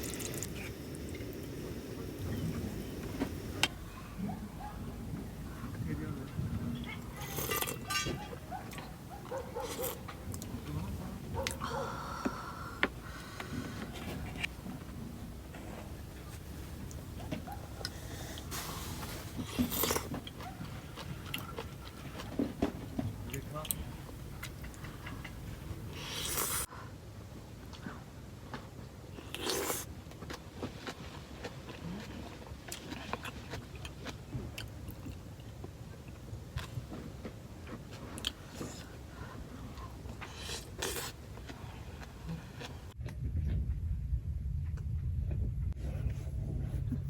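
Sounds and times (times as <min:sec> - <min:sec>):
low steady rumble: 0:00.0 - 0:26.0, 0:41.3 - 0:47.0
chewing and biting food: 0:07.1 - 0:10.6, 0:16.6 - 0:26.7, 0:29.3 - 0:42.8.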